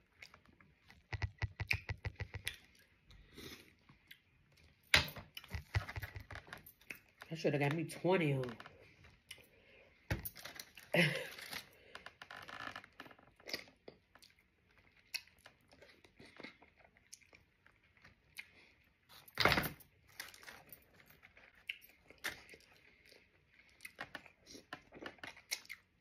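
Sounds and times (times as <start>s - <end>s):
wet chewing and mouth smacks: 0.0s - 7.2s, 9.0s - 9.5s, 13.4s - 19.0s, 21.3s - 26.0s.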